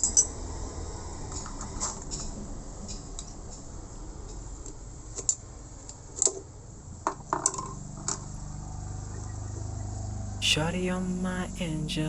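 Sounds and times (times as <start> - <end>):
small metal clinks and taps: 0.0 - 0.3
low steady hum: 0.0 - 12.0.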